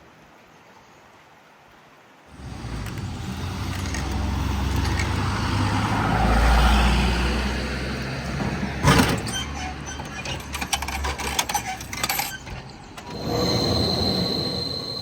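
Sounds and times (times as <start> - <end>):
vehicle engine passing: 2.3 - 9.3.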